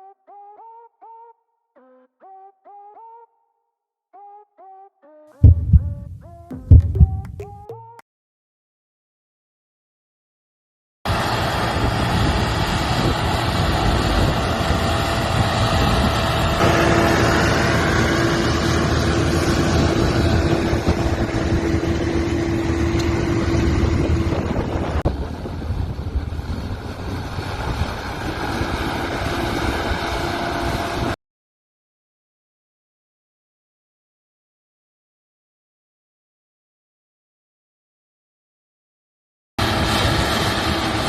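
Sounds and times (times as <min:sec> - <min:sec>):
tractor diesel engine: 0:11.1 - 0:31.1, 0:39.6 - 0:41.0
steady whine: 0:16.6 - 0:25.0.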